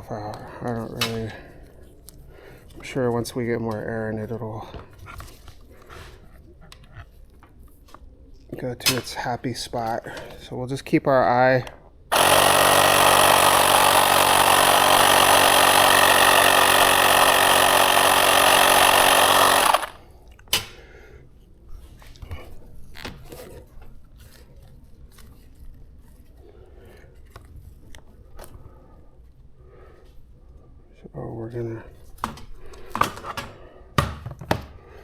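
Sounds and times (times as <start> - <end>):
electric tire inflator running: 12.1 - 20.0.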